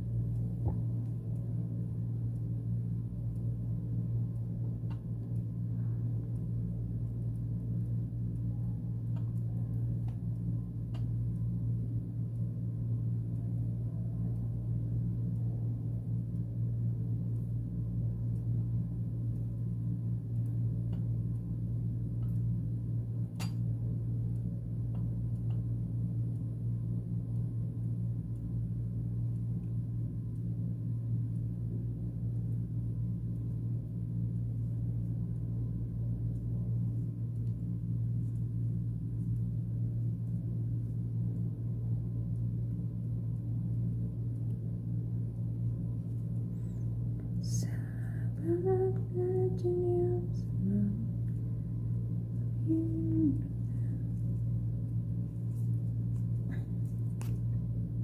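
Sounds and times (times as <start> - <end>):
steady low hum: 0.0 - 58.0.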